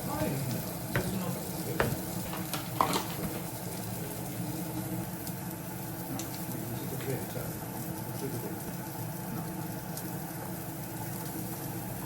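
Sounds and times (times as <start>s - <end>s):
utensils clinking: 1.0s - 3.5s.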